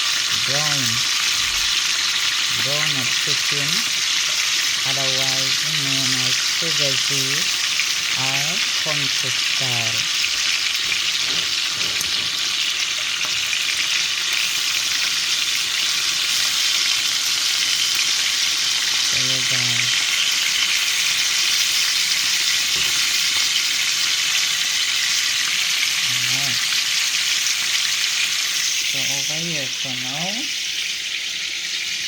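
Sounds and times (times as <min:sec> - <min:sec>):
chicken sizzling in a pot: 0:00.0 - 0:32.0
person speaking: 0:00.3 - 0:01.1, 0:02.4 - 0:04.0, 0:04.8 - 0:07.5, 0:08.1 - 0:10.1, 0:19.1 - 0:20.0, 0:26.0 - 0:26.7, 0:28.9 - 0:30.6.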